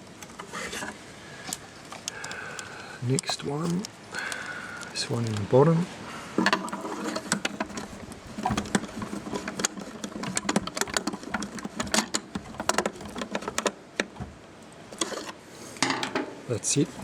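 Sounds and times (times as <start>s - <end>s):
screwdriver clicking and scraping: 6.4s - 14.2s, 15.0s - 15.4s.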